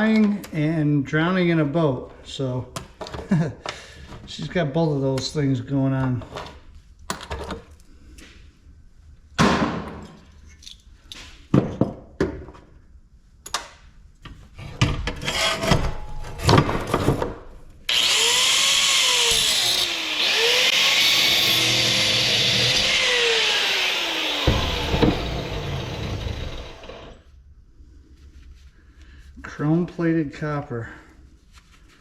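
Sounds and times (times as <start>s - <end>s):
power tool running: 17.9s - 27.2s.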